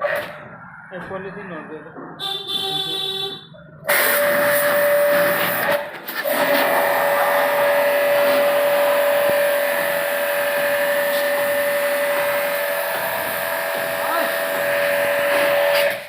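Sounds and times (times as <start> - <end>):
electric motor whining: 6.3 - 16.0.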